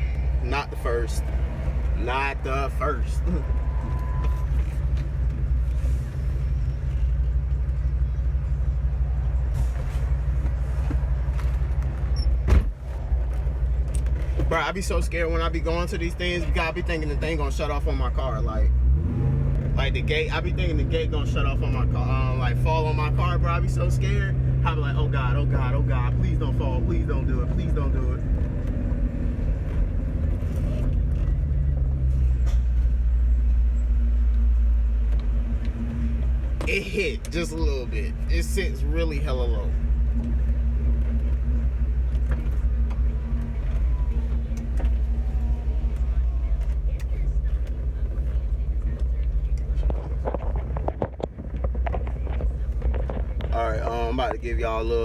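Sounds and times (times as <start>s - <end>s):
car engine low rumble: 0.0s - 55.0s
loud thump: 12.4s - 12.8s.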